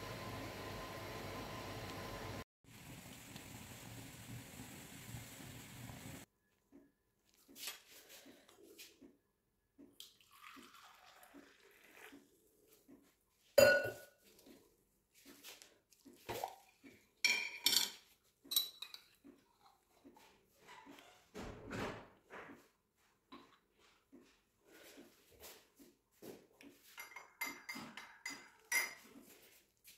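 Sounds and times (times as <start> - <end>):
dishes and utensils clinking: 13.6 - 14.1, 17.2 - 19.8, 26.8 - 29.3.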